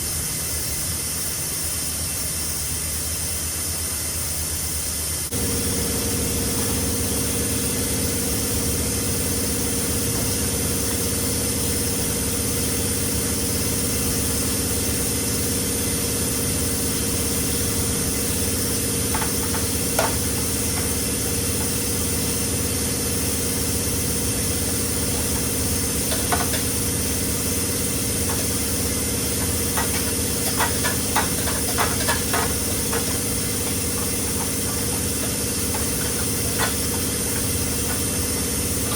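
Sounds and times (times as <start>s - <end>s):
engine humming: 24.2s - 38.9s.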